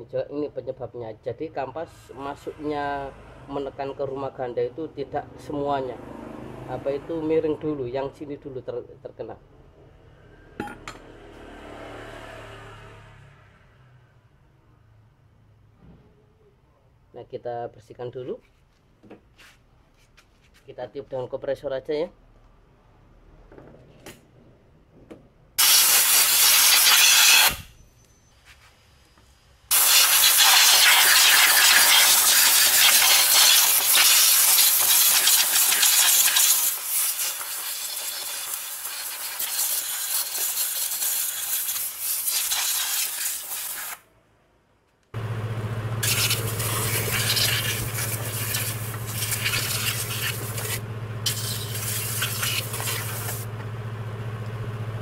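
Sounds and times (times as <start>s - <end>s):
compressed air blasting: 25.6s - 27.8s, 29.7s - 44.0s, 46.0s - 53.5s
motor humming: 45.2s - 55.0s.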